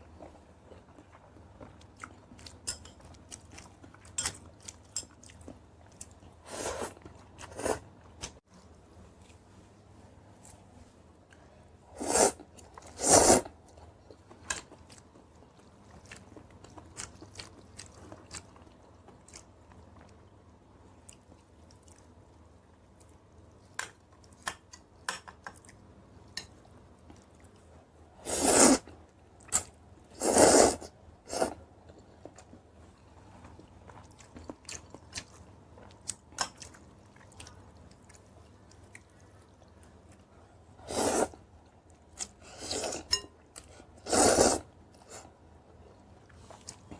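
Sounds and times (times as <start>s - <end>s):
person chewing and crunching: 13.7s - 20.2s, 31.9s - 40.3s.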